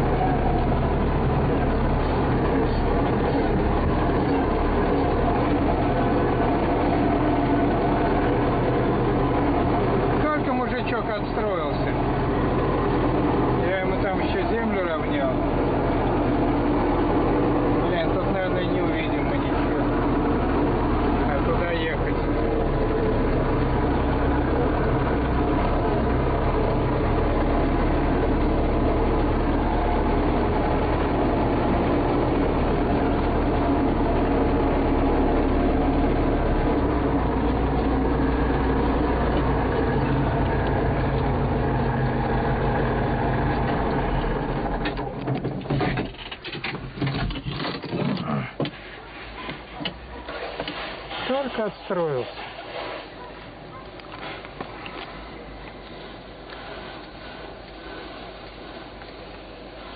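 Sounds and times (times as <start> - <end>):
car engine running: 0.0 - 50.7
knocks and rustling: 44.9 - 51.2.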